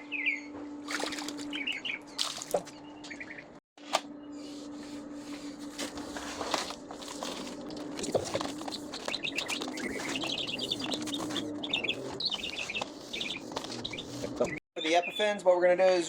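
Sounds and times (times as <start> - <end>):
songbirds chirping: 0.0 - 3.6, 7.0 - 16.0
steady low hum: 0.0 - 14.6.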